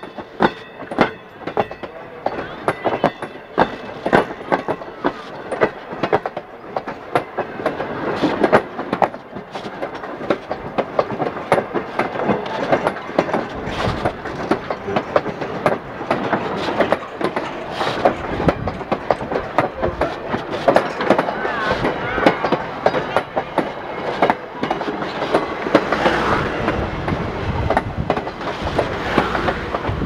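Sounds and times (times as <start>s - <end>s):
train wheels clattering over rails: 0.0s - 30.0s.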